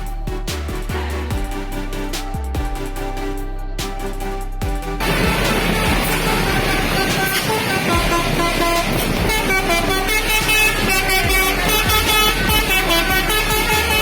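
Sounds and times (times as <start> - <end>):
multi-tone bus air horn melody: 5.0 - 14.0.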